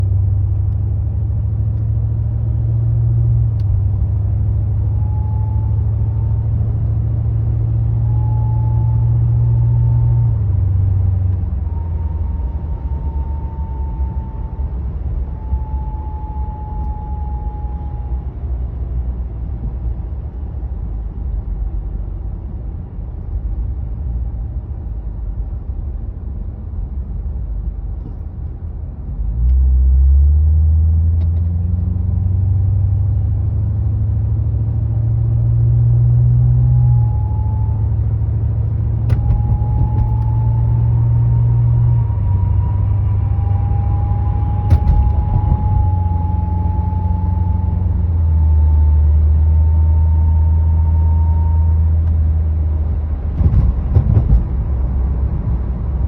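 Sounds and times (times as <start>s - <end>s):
road rumble: 0.0s - 56.0s
car engine running: 36.8s - 51.4s, 52.0s - 56.0s.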